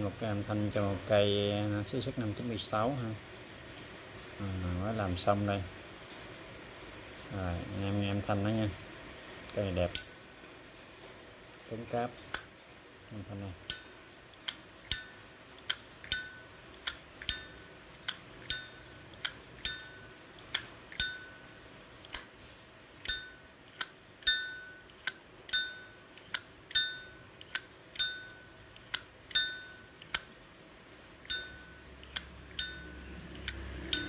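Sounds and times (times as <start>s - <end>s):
lighter bell-like ring: 10.0s - 10.3s, 13.7s - 22.3s, 23.0s - 30.3s, 31.3s - 34.0s.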